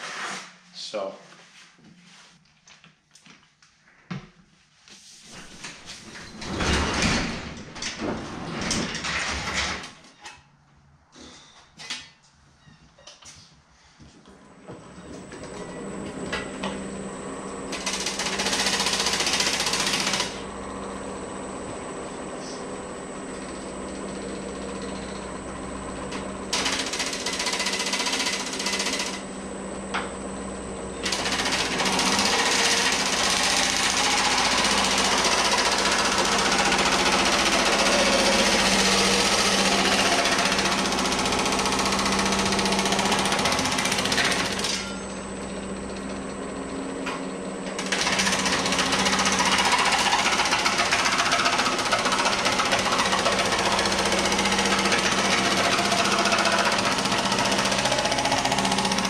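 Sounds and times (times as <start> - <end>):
machine motor hum: 14.7 - 59.0.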